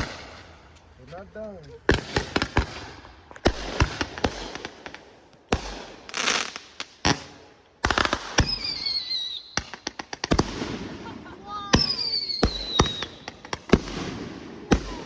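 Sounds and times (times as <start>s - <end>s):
fireworks bangs: 0.0s - 1.0s, 1.8s - 15.0s
fireworks hissing crackle: 0.0s - 1.0s, 1.8s - 15.0s.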